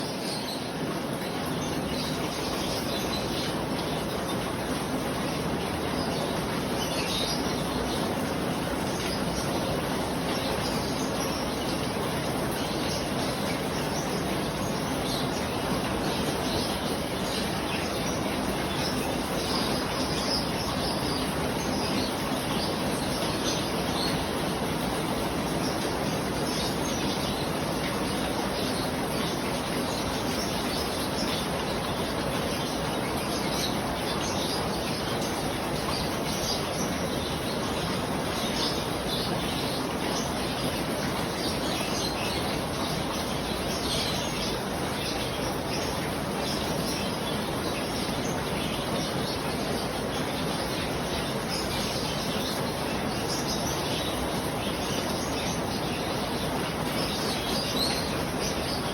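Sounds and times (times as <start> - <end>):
birds chirping: 0.0 - 58.9
steady rain falling: 0.0 - 58.9.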